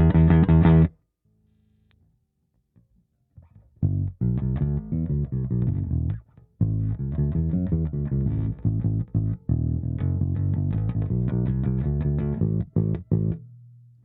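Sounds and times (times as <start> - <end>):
electric bass plucked notes: 0.0 - 0.9, 3.7 - 13.9.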